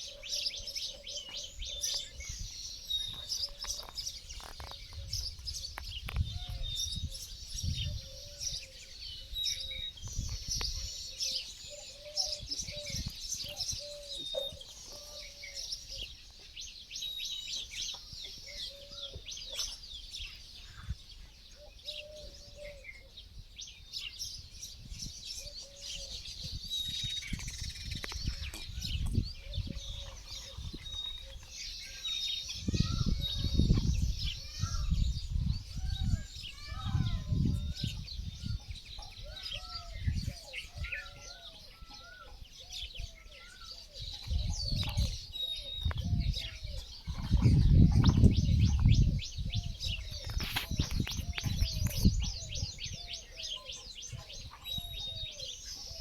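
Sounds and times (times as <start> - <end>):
small bird chirping: 21.8 - 56.0.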